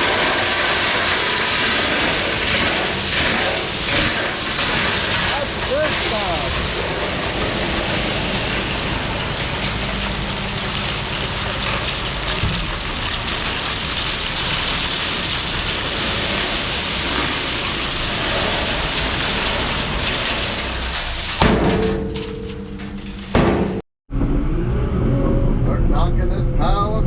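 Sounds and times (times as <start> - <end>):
heavy diesel machinery running: 0.0 - 21.5
gravel hissing and rattling: 0.0 - 21.9
sudden knock: 12.4 - 12.8.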